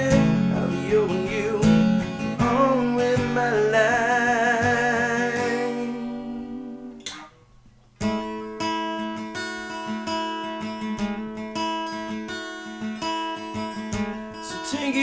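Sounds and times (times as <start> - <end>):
person singing with vibrato: 0.0 - 7.1, 14.4 - 15.0
strummed acoustic guitar: 0.0 - 15.0.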